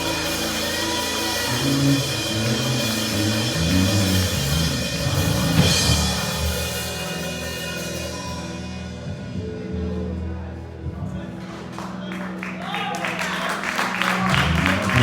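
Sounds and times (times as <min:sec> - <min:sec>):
cymbal crash: 0:00.0 - 0:09.0
band playing upbeat music: 0:00.0 - 0:10.2, 0:11.3 - 0:15.0.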